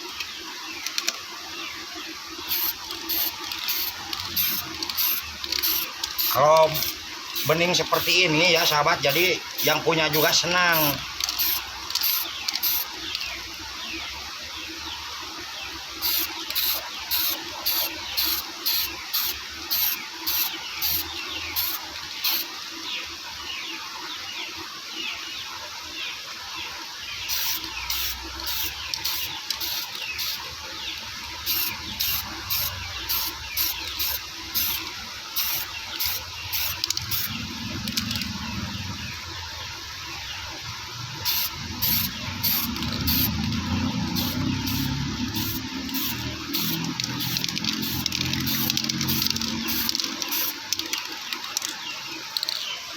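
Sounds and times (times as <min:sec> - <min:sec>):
spray paint can hissing: 0:00.0 - 0:01.2, 0:02.3 - 0:13.5, 0:16.0 - 0:22.6, 0:27.2 - 0:38.4, 0:41.1 - 0:52.7.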